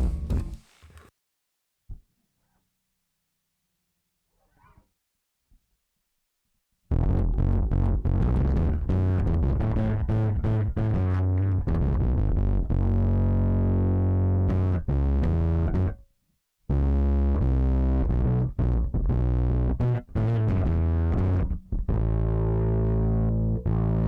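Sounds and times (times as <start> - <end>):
distorted electric bass: 0.0 - 0.6, 6.9 - 16.0, 16.7 - 24.0.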